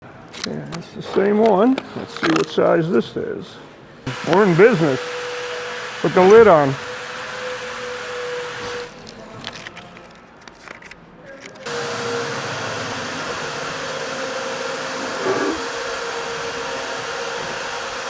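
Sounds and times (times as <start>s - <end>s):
machine whirring with faint whine: 11.7s - 18.0s.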